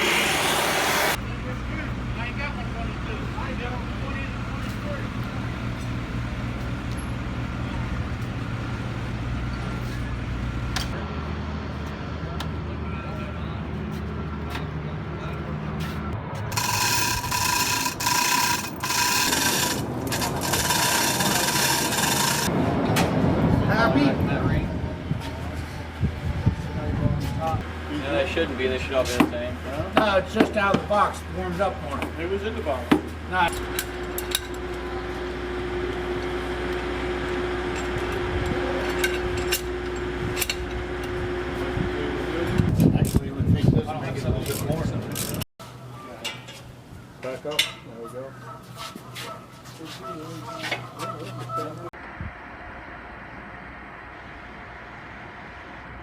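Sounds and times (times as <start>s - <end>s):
power tool whining: 0.0s - 1.2s, 16.5s - 22.5s
low engine hum: 0.0s - 16.6s
steady mechanical hum: 0.0s - 56.0s.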